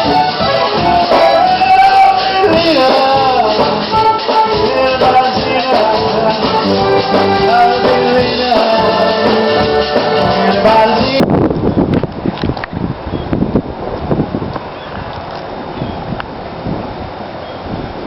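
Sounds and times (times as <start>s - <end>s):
melody of sliding notes: 0.0s - 11.2s.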